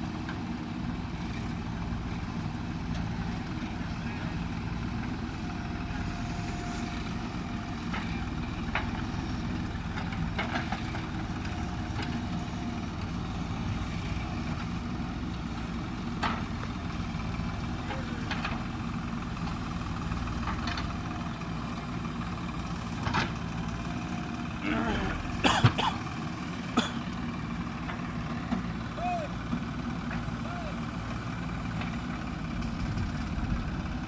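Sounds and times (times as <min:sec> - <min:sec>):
diesel engine running: 0:00.0 - 0:34.0.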